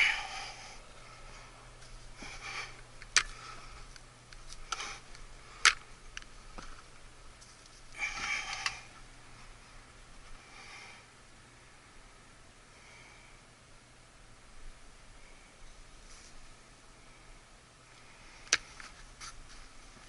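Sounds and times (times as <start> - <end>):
rustling: 0.0 - 10.4, 15.9 - 16.6.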